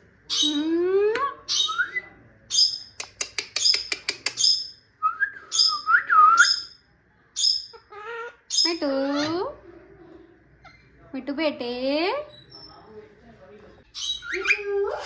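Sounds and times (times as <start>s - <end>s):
parrot squawking: 0.3s - 0.7s, 7.4s - 9.4s, 13.9s - 15.0s
parrot clicks: 2.9s - 4.4s
parrot whistling: 14.1s - 15.0s.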